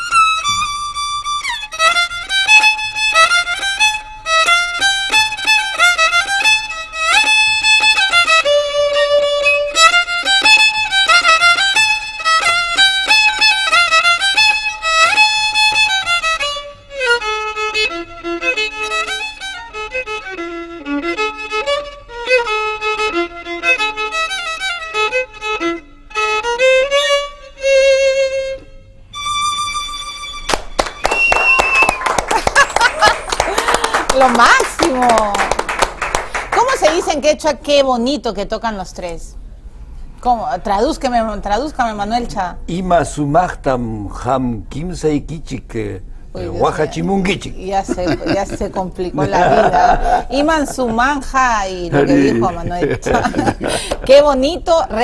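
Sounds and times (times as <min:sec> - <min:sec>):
violin playing lively melody: 0:00.0 - 0:31.0, 0:47.8 - 0:54.4.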